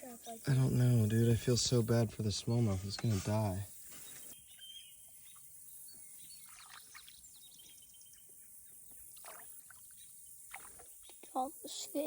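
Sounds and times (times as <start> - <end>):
faint high bird chirps: 4.0 - 12.0.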